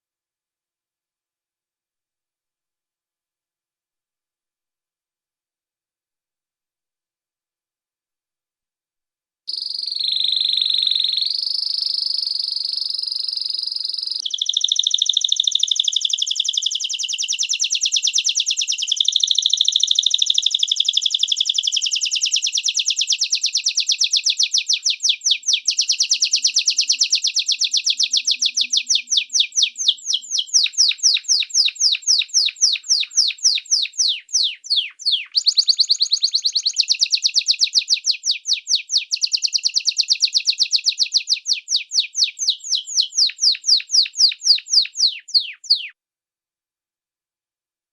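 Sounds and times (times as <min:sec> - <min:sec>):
canary singing: 0:09.5 - 0:46.0.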